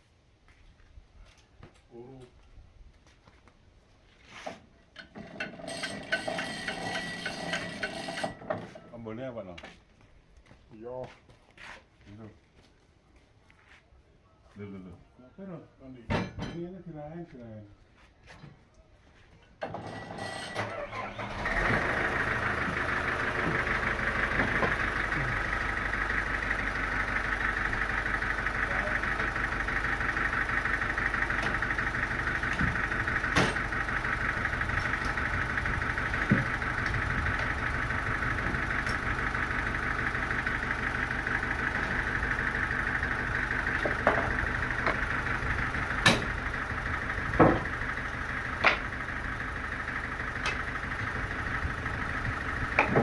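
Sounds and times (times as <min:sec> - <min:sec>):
sawmill machinery running: 0:05.0 - 0:08.8, 0:19.6 - 0:53.0.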